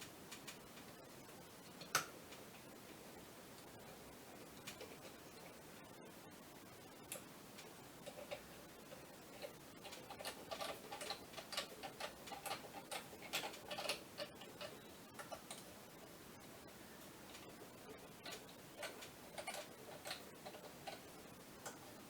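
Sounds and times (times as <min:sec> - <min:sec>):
small tools and metal parts clicking: 0:09.3 - 0:15.7, 0:18.2 - 0:21.0.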